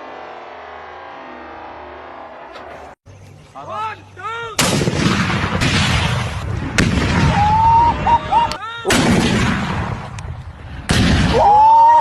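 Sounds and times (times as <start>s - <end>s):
loud gunshots with echo: 4.6s - 7.6s, 8.9s - 10.1s.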